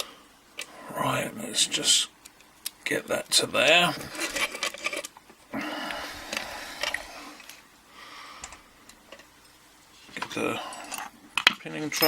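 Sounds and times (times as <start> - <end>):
metal scraping and sliding: 3.9 - 5.1.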